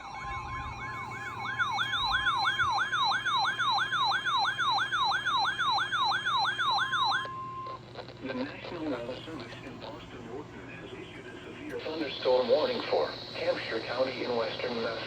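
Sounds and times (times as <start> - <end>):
weather radio alarm siren warbling: 0.0 - 7.8.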